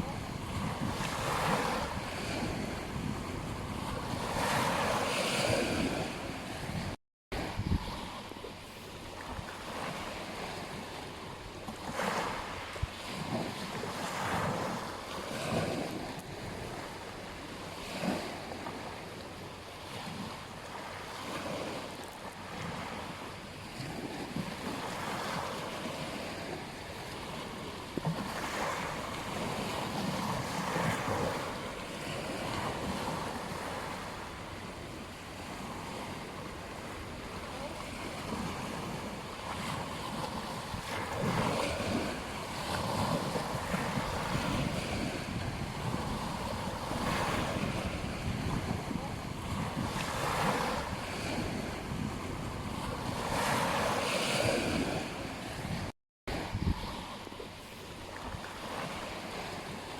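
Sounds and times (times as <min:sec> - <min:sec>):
ocean surf breaking: 0:00.0 - 0:11.2, 0:35.4 - 0:57.8.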